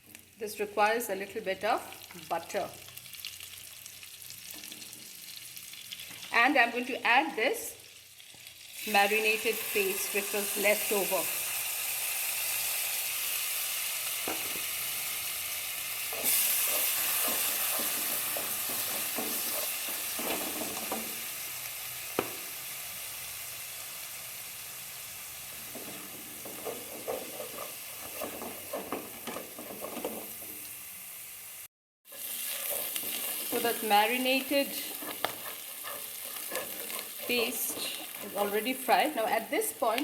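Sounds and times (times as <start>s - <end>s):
paste sizzling in a frying pan: 0.0s - 40.0s
spoon stirring and scraping pan: 16.0s - 21.4s, 25.6s - 30.9s, 32.1s - 40.0s.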